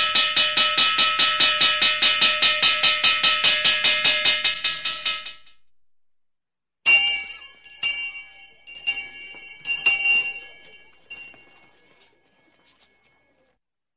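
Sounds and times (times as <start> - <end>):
handheld fire bell ringing: 0.0 - 5.3, 6.9 - 12.6.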